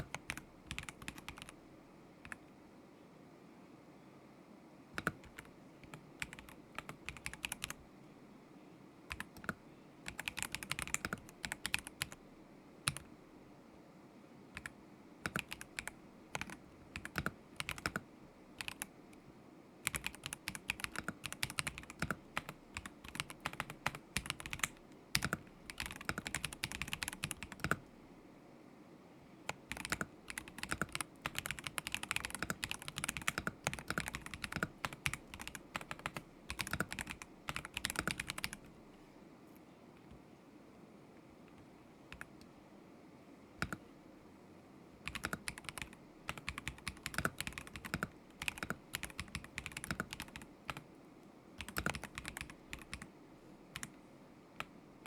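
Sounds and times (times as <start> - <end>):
mechanical keyboard typing: 0.0 - 1.6, 5.0 - 7.8, 9.1 - 12.2, 12.9 - 13.1, 14.6 - 18.0, 18.6 - 18.9, 19.8 - 27.9, 29.5 - 38.7, 43.6 - 43.8, 45.0 - 50.8, 51.6 - 53.1, 53.8 - 54.0.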